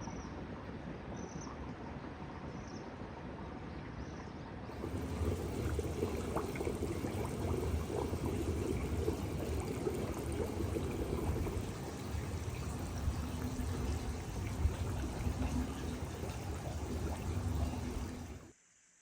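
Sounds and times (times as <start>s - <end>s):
water running into bath: 4.7s - 18.5s.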